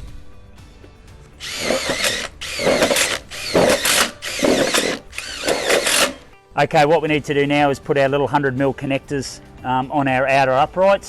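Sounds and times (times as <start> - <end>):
power drill driving screws: 1.4 - 6.3.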